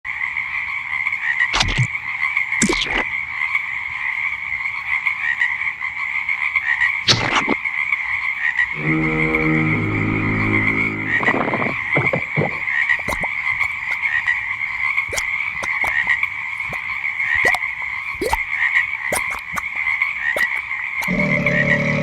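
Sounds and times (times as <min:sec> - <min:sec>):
frogs croaking: 0:00.1 - 0:22.0
steady high trill: 0:08.8 - 0:12.2
low droning tone: 0:08.8 - 0:12.6.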